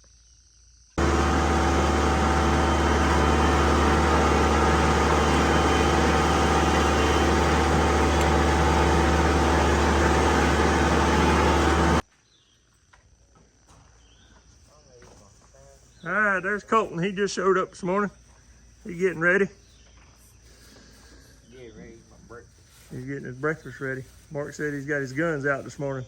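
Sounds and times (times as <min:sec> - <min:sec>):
engine humming steadily: 0:01.0 - 0:12.0.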